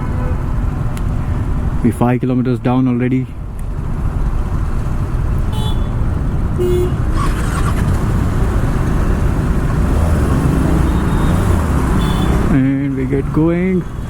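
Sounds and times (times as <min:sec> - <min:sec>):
road traffic: 0:00.0 - 0:14.0
car horn toots: 0:06.6 - 0:07.0, 0:10.8 - 0:12.5.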